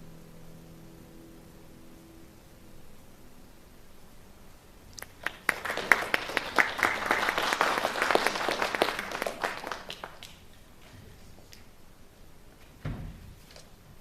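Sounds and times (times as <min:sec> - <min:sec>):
audience applauding: 0:05.0 - 0:10.5.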